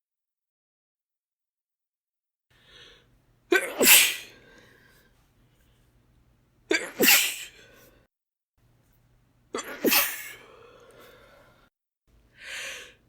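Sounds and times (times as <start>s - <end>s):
woman sneezing: 3.5s - 4.4s, 6.7s - 7.6s, 9.6s - 10.4s.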